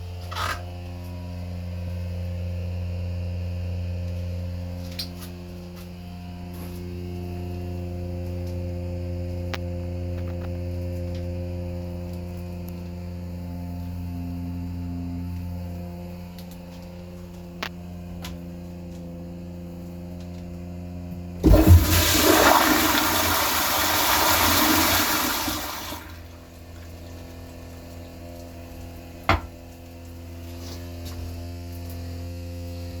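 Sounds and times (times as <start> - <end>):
steady low hum: 0.0 - 33.0
toilet flushing: 21.4 - 28.2.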